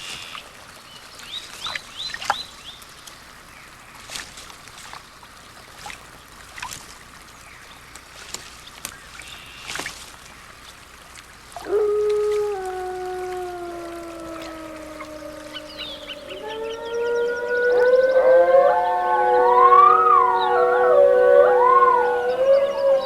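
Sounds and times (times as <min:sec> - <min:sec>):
loud long held tone: 0:14.6 - 0:23.0.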